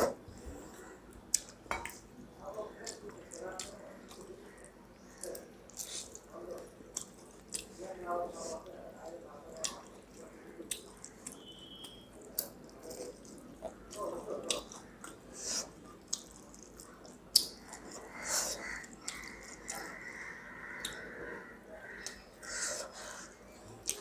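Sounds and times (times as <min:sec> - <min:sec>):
chewing and mouth clicks: 0:02.8 - 0:07.8, 0:09.5 - 0:20.0.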